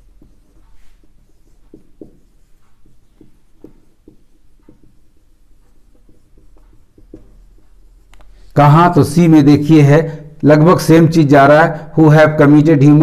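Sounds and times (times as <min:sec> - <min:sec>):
pen scratching on paper: 0:00.0 - 0:09.2.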